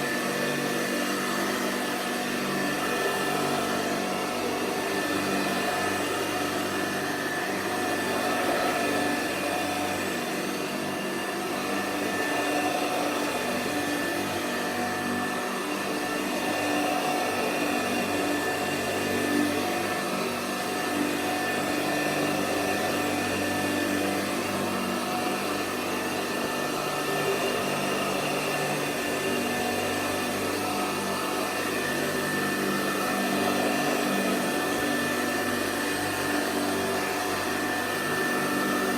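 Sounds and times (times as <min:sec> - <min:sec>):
upright vacuum cleaner running: 0:00.0 - 0:38.9.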